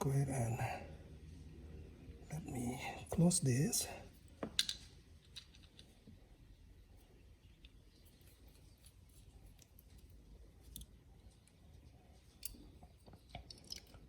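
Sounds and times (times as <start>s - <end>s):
faint low room hum: 0.0s - 14.0s
small objects clicking: 4.4s - 6.0s, 12.3s - 14.0s.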